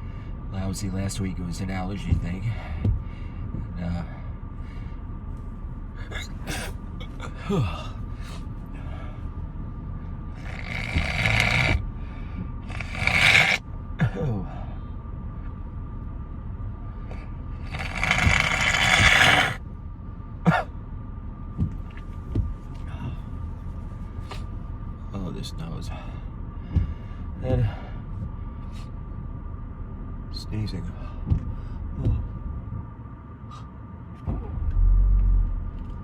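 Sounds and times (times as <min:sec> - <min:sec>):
man breathing hard through nose: 0:00.0 - 0:00.5, 0:02.5 - 0:05.2, 0:06.0 - 0:09.5, 0:10.4 - 0:13.6, 0:16.9 - 0:19.6, 0:26.0 - 0:29.0
loud breathy gasps: 0:10.4 - 0:13.6.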